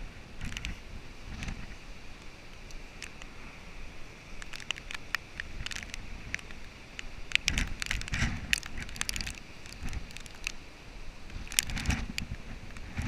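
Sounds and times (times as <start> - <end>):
wind gusting across microphone: 0.0 - 13.0
sharp crackles and ticks: 0.4 - 1.6, 2.2 - 3.4, 4.3 - 10.6, 11.3 - 13.0.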